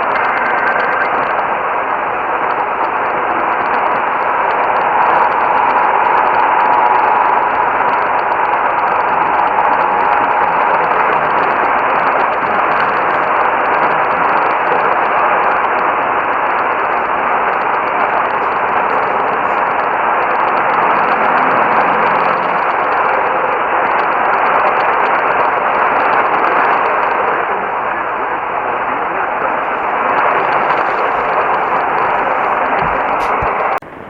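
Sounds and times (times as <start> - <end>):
radio static: 0.0 - 34.0.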